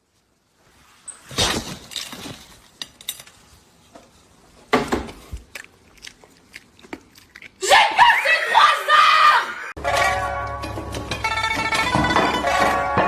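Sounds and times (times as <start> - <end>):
dishes and utensils clattering: 9.8 - 13.0.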